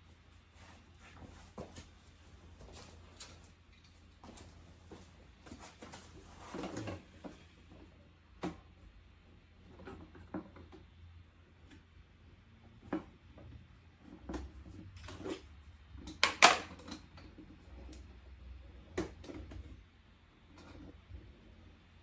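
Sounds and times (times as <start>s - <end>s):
clicks and knocks of parts: 16.0s - 17.5s.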